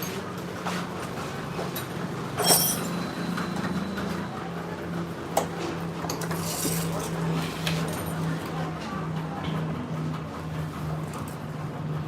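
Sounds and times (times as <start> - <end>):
metal tools and engine parts clinking: 0.0 - 0.3, 1.8 - 3.6.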